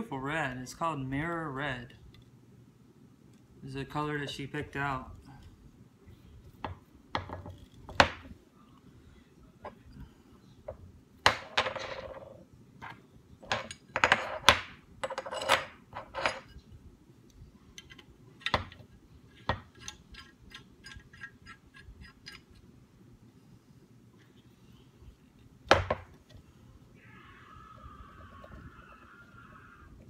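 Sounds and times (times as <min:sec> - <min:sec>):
metal parts clinking and scraping: 0:15.0 - 0:16.6, 0:19.7 - 0:22.6.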